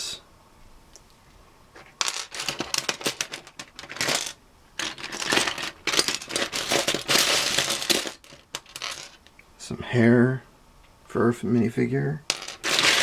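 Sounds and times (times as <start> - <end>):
plastic bricks clattering: 1.8 - 9.3, 12.3 - 13.0.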